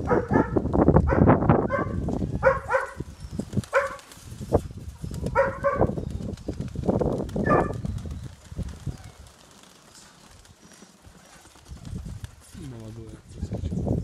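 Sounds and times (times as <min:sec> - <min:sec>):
dog barking: 0:00.0 - 0:03.1, 0:03.7 - 0:04.0, 0:05.3 - 0:05.9, 0:07.4 - 0:07.8
wind buffeting microphone: 0:00.0 - 0:09.4, 0:11.6 - 0:14.0.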